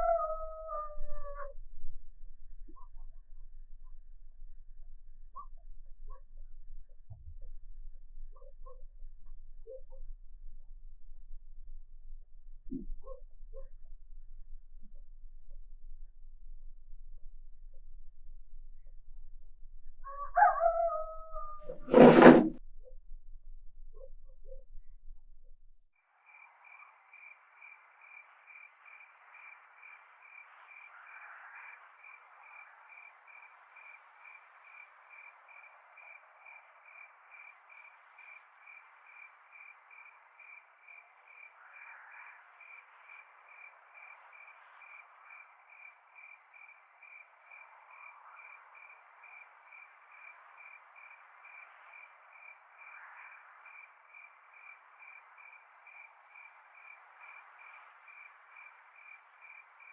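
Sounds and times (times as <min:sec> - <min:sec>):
louder insect calls: 0:00.0 - 0:01.8, 0:20.1 - 0:22.5, 0:26.0 - 0:59.9
faint insect hum: 0:00.0 - 0:21.4, 0:22.8 - 0:59.9
cricket chirping: 0:00.0 - 0:21.7, 0:26.0 - 0:59.9.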